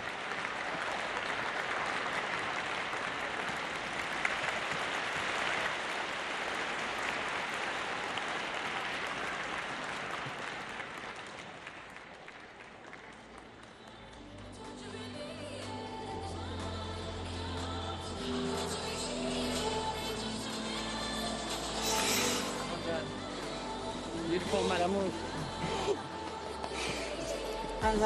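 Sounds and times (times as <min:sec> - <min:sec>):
audience applauding: 0:00.0 - 0:14.2.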